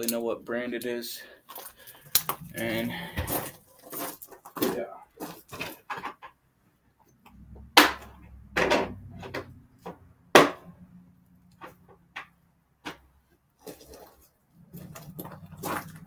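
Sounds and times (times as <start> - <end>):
faint low rumble: 7.2 - 12.0.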